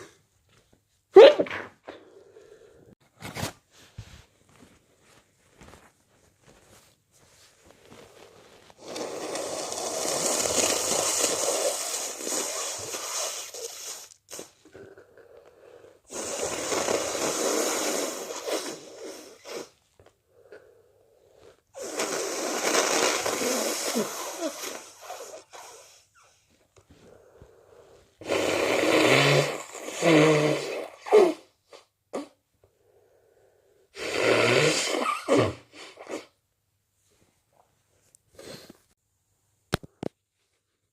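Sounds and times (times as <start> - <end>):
person blowing nose: 7.9 - 15.0, 16.1 - 19.9, 21.7 - 27.1, 28.0 - 32.4, 33.9 - 36.4, 38.4 - 38.8.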